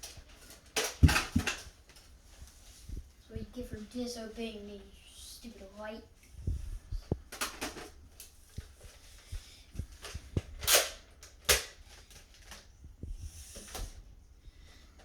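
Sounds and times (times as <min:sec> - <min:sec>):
plastic toy blaster clicks: 0:10.6 - 0:11.8.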